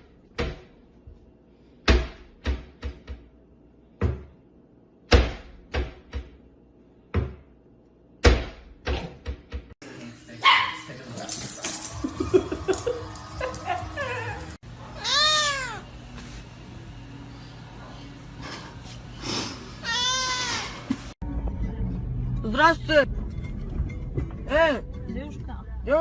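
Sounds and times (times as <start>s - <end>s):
dog barking: 10.4s - 10.9s, 14.7s - 15.1s.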